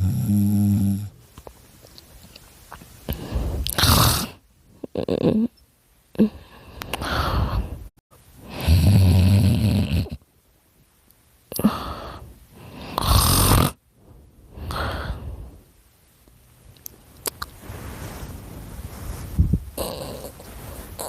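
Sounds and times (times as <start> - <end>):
person snoring: 0.0 - 1.1, 8.4 - 10.2, 11.5 - 13.8, 19.8 - 21.0.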